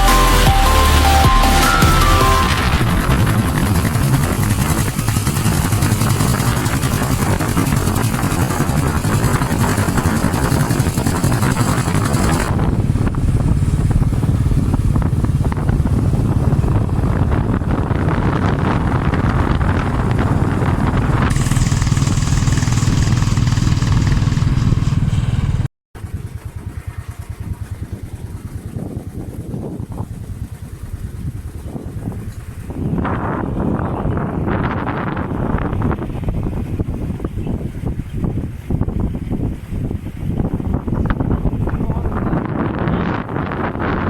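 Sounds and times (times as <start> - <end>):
motorcycle engine running: 0.0 - 44.0.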